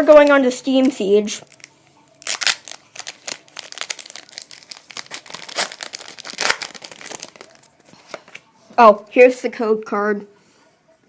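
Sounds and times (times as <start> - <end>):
foil wrapper ripping: 1.4 - 7.7
foil wrapper crinkling: 1.4 - 8.4.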